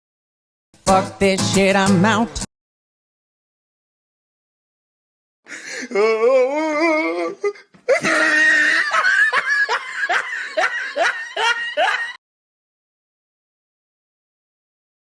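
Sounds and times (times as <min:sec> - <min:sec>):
person laughing hard: 0:05.5 - 0:12.2.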